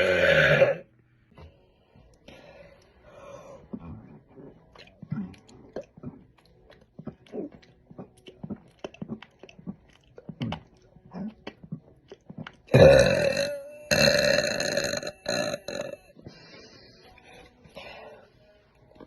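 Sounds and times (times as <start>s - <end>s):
woman burping: 0.0s - 0.8s, 12.7s - 16.1s
woman chewing: 3.7s - 15.4s.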